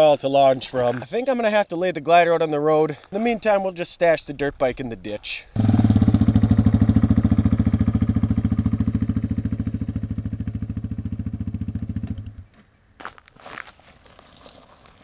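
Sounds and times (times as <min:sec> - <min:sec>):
dirt bike engine idling: 0:05.6 - 0:12.4.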